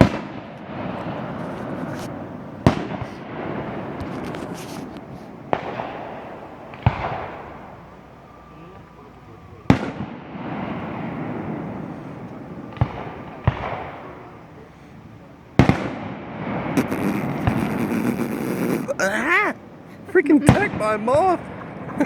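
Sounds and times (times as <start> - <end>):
fireworks bangs with echo: 0.0 - 7.9, 9.7 - 14.6, 15.6 - 17.8, 20.4 - 22.0.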